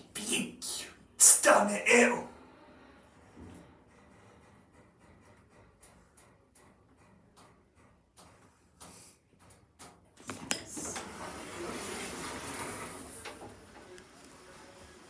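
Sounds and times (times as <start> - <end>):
lift doors sliding rush: 1.9 - 9.2, 10.2 - 15.0.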